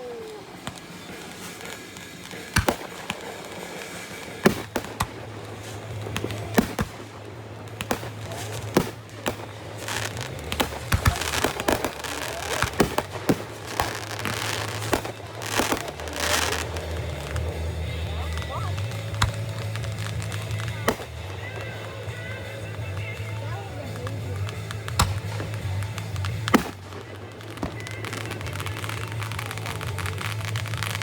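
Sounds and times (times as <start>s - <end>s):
fireworks bangs: 0.0s - 31.0s
fireworks crackling: 0.0s - 31.0s.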